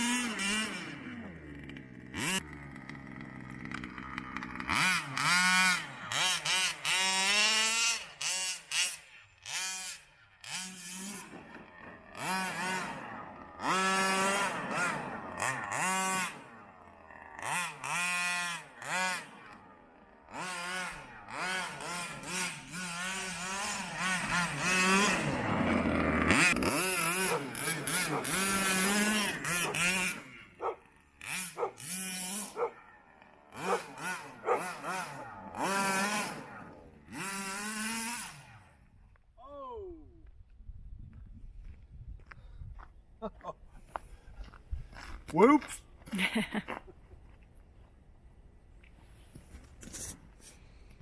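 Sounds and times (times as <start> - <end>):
toy truck engine revving: 0.0 - 38.8.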